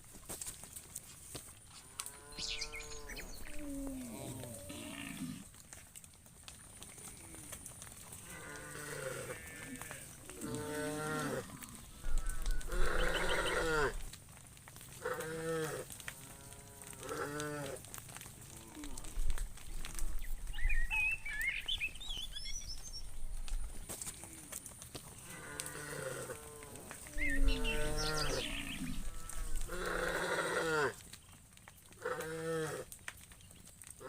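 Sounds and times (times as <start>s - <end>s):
cattle mooing: 1.9s - 5.5s, 8.2s - 14.0s, 25.2s - 31.0s.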